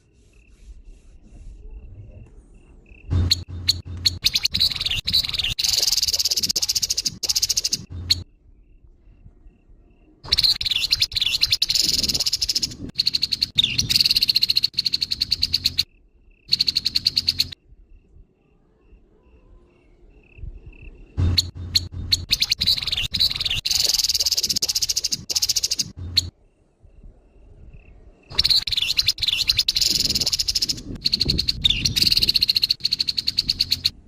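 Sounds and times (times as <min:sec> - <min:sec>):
bird rasping chatter: 0:03.1 - 0:08.2, 0:10.3 - 0:15.9, 0:16.5 - 0:17.6, 0:21.3 - 0:26.3, 0:28.3 - 0:34.0.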